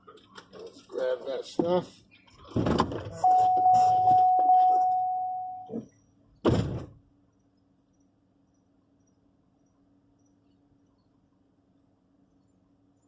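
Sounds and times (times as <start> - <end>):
door-open warning chime: 3.2 - 5.7
car door shutting thud: 6.4 - 7.0.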